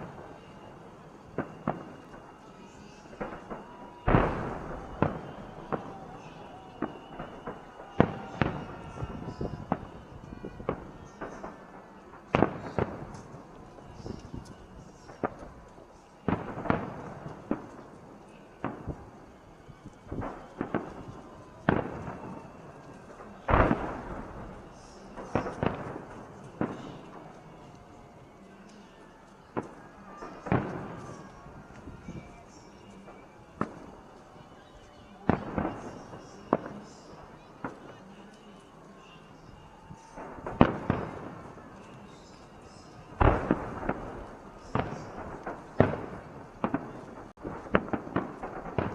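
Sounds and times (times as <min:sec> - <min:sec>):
distant fireworks booming: 0:00.0 - 0:48.9
small firework pops: 0:00.0 - 0:48.9.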